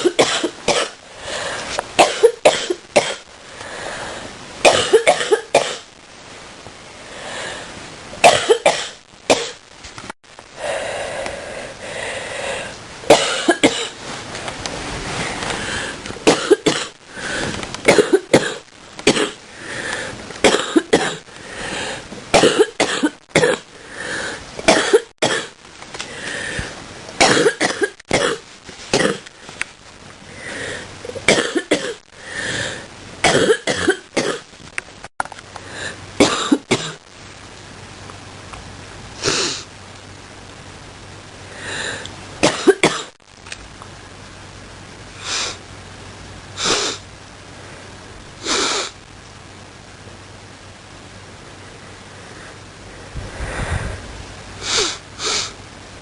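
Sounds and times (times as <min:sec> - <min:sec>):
person coughing: 0:00.0 - 0:01.0, 0:02.0 - 0:03.2, 0:04.6 - 0:05.8, 0:08.2 - 0:09.6, 0:13.1 - 0:14.0, 0:16.3 - 0:16.9, 0:17.9 - 0:19.4, 0:20.4 - 0:21.2, 0:22.4 - 0:23.6, 0:24.7 - 0:25.5, 0:27.2 - 0:28.4, 0:31.2 - 0:32.0, 0:33.2 - 0:34.4, 0:36.2 - 0:37.0, 0:42.4 - 0:43.1.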